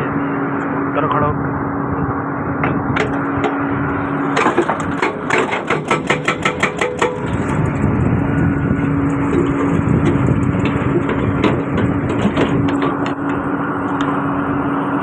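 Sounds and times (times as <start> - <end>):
excavator engine running: 0.0 - 15.0
hydraulic breaker hammering: 4.3 - 7.8, 9.0 - 14.1.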